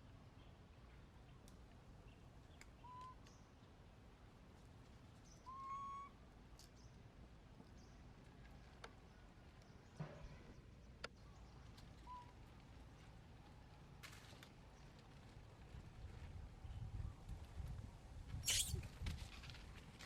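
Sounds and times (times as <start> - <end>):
whistled animal calls: 2.8 - 3.2, 5.4 - 6.2, 18.4 - 18.8.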